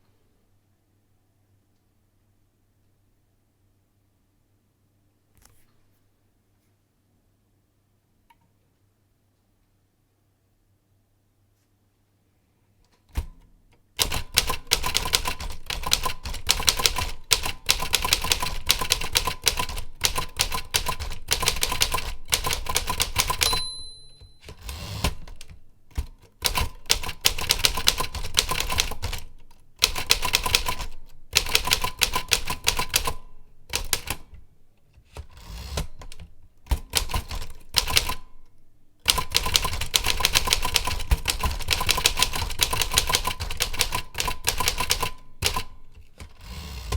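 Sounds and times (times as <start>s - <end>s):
rapid keyboard typing: 14.0s - 34.4s, 35.2s - 38.3s, 39.1s - 46.9s
high-pitched ding: 23.5s - 24.5s.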